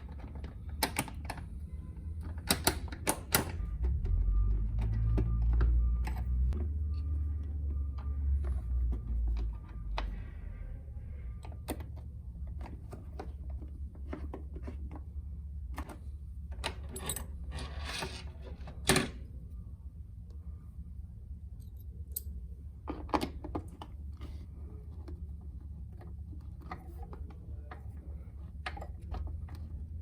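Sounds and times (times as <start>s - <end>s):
small clicks and knocks of parts: 0.0s - 10.2s
low steady hum: 0.0s - 30.0s
clatter of parts: 15.8s - 19.2s.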